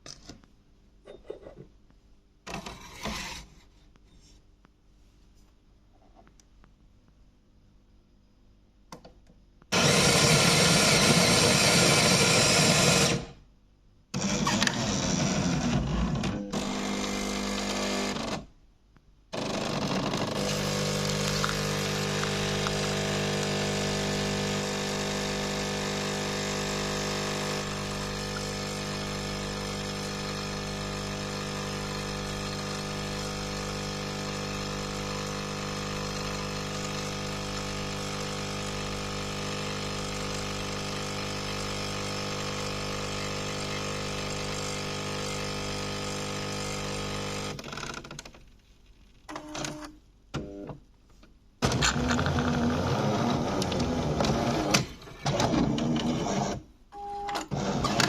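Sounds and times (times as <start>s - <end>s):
espresso machine pump humming: 16.6s - 18.2s, 19.4s - 47.6s.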